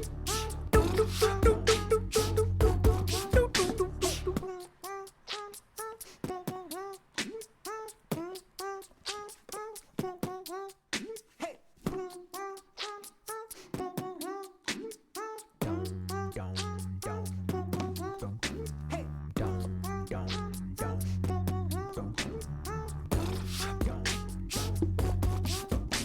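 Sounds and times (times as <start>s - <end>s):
deep bass: 0.0s - 4.4s, 15.6s - 26.0s
vocal-like notes with bending pitch: 0.0s - 5.6s, 15.6s - 26.0s.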